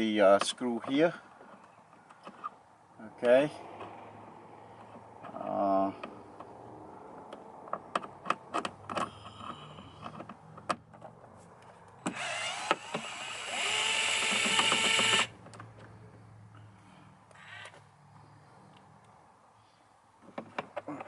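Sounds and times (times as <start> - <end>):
clicks and taps of screws: 7.2 - 11.2
power screwdriver whining: 12.1 - 15.3.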